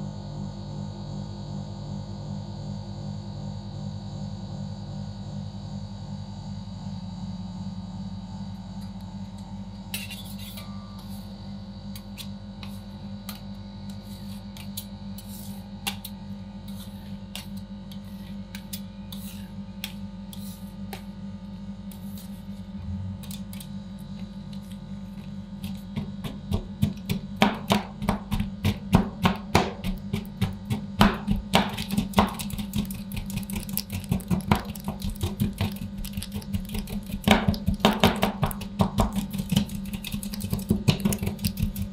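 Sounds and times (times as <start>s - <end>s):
cooling unit hum: 0.0s - 41.9s
metal spatulas chopping and scraping: 9.9s - 11.2s, 16.7s - 21.1s.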